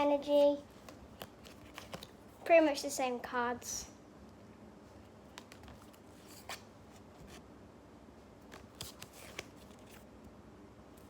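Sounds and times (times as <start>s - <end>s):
cards rustling: 0.7s - 2.3s, 8.4s - 10.1s.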